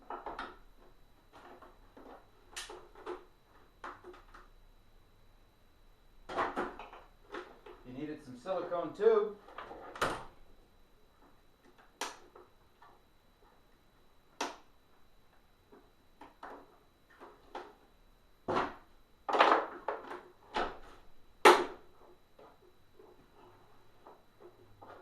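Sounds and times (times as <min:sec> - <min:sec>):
plastic parts knocking and clicking: 0:00.0 - 0:04.5, 0:06.3 - 0:07.8, 0:18.5 - 0:22.7.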